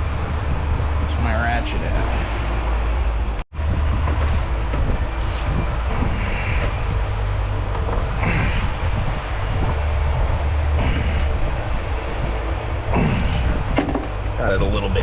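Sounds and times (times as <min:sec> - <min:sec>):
low background rumble: 0:00.0 - 0:15.0
hand tool clicks and scrapes: 0:04.2 - 0:04.5, 0:05.2 - 0:05.6, 0:13.2 - 0:13.6.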